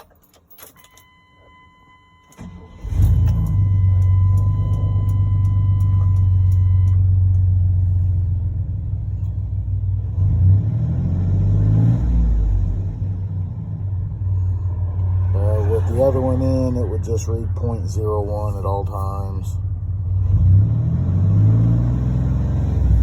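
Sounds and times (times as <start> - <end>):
car engine idling: 2.4 - 10.2, 13.0 - 20.3
engine revving: 2.7 - 23.0.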